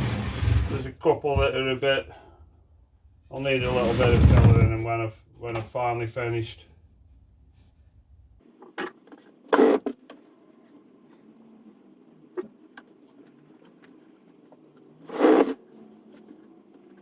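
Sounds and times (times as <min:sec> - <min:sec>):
low steady hum: 0:00.0 - 0:08.8.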